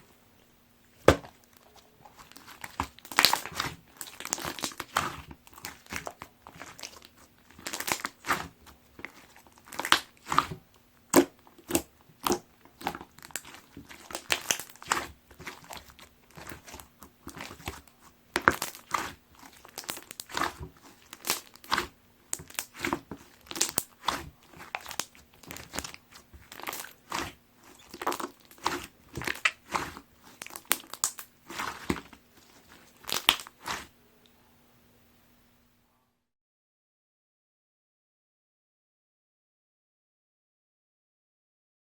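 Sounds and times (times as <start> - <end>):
slime crackling and popping: 1.1 - 33.9.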